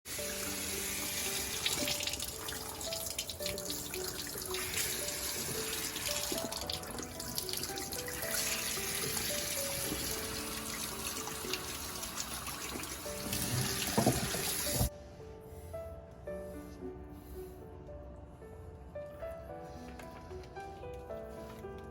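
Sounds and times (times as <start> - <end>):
tap water running into sink: 0.1 - 14.9
light background music: 0.1 - 21.9.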